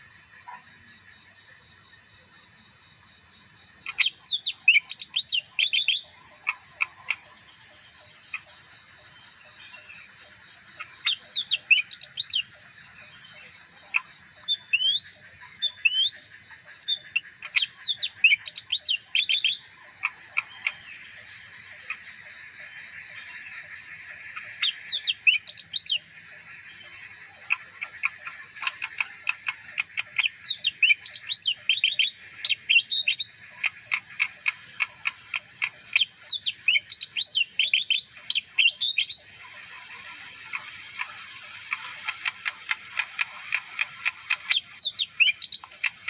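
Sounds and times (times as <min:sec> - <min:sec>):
bird singing whistled notes: 0:03.9 - 0:06.3, 0:10.8 - 0:16.2, 0:16.8 - 0:20.8, 0:24.6 - 0:27.6, 0:30.2 - 0:33.4, 0:35.8 - 0:39.3, 0:43.8 - 0:46.0.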